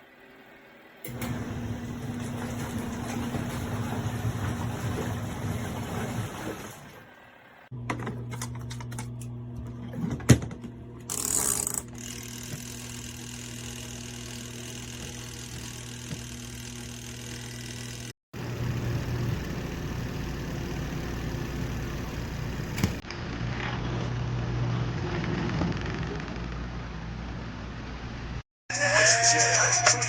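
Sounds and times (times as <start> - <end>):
washing machine motor hum: 0.0 - 23.0.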